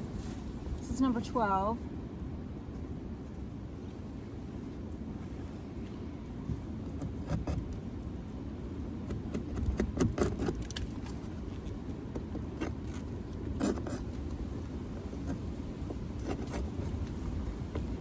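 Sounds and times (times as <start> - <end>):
wind rumble on microphone: 0.0 - 18.0
metal tool scraping wood: 7.0 - 7.8, 9.1 - 11.7, 12.3 - 18.0.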